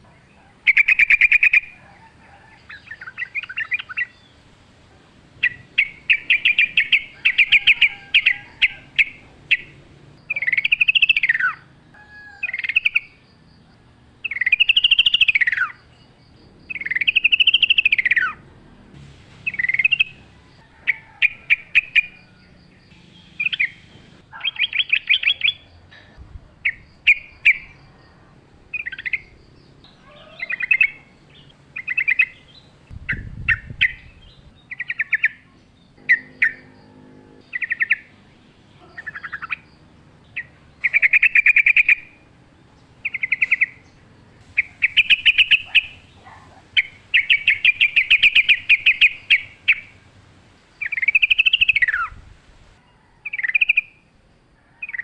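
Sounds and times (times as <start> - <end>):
bird singing chattering notes: 5.4 - 11.7, 14.2 - 18.4, 19.0 - 52.2.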